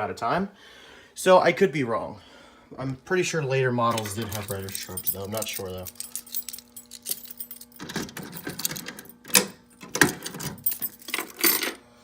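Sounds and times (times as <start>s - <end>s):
keys jangling: 3.9s - 11.8s.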